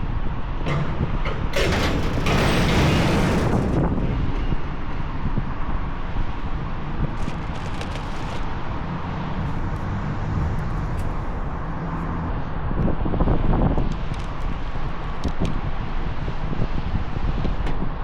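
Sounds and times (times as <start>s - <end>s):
condenser fan rattling: 0.0s - 4.9s.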